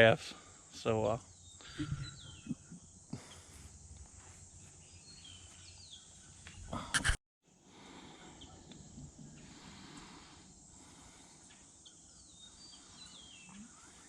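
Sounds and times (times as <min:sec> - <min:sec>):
faint outdoor ambience: 0:00.0 - 0:14.0
bird chirps: 0:01.2 - 0:03.5, 0:04.6 - 0:06.8, 0:11.5 - 0:14.0.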